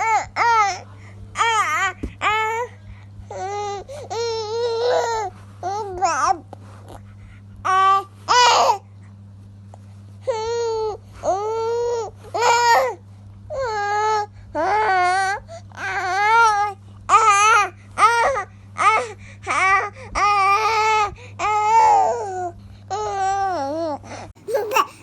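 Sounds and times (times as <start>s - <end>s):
faint low hum: 0.0s - 25.0s
baby crying and babbling: 3.3s - 6.3s, 10.3s - 25.0s.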